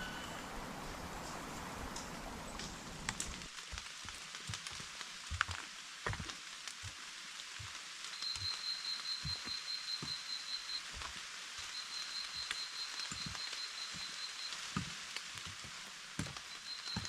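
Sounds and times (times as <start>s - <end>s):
steady hiss: 0.0s - 17.0s
footsteps on forest trail: 1.2s - 7.0s.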